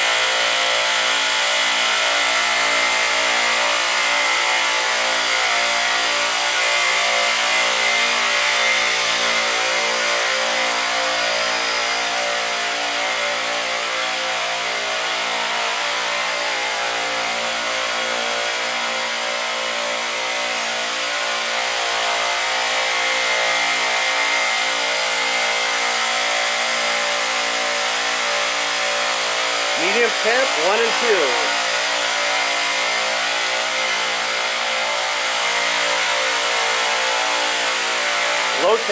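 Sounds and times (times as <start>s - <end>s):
refrigeration compressors droning: 29.6s - 32.3s.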